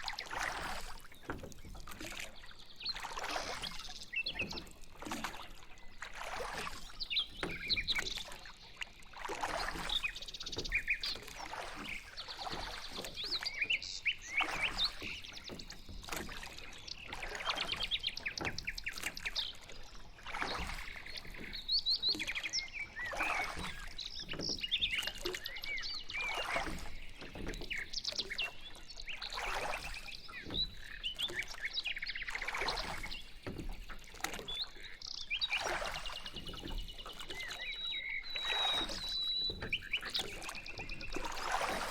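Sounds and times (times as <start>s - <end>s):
songbirds chirping: 0.0s - 41.9s
water sloshing from boat: 0.0s - 41.9s.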